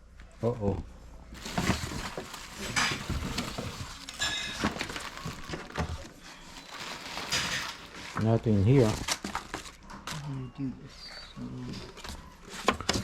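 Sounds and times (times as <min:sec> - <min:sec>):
rummaging through a box: 0:01.3 - 0:10.2, 0:11.7 - 0:13.0.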